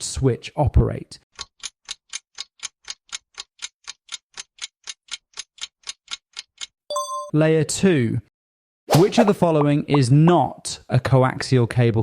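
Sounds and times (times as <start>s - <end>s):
clock ticking: 1.3s - 7.3s.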